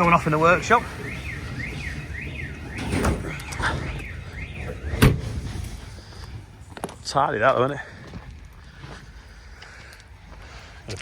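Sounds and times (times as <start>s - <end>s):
warbling electronic alarm: 0.0s - 6.3s.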